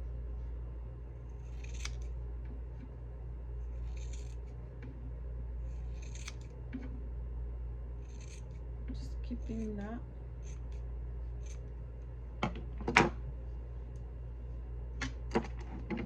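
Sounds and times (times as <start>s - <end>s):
scissors snipping hair: 1.3s - 2.1s, 3.8s - 4.5s, 5.7s - 6.6s, 8.1s - 8.6s.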